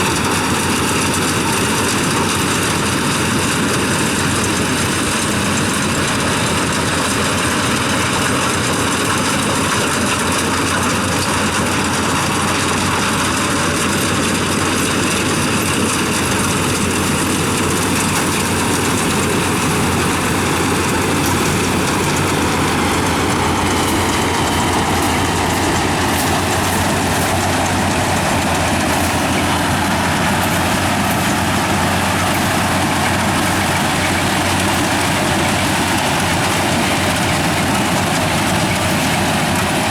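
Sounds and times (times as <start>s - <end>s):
combine harvester engine drone: 0.0s - 39.9s.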